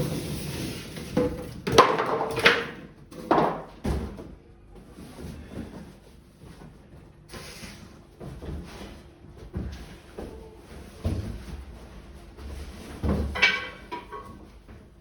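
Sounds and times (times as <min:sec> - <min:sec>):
objects knocking and bumping: 0:01.0 - 0:04.4, 0:12.5 - 0:14.5.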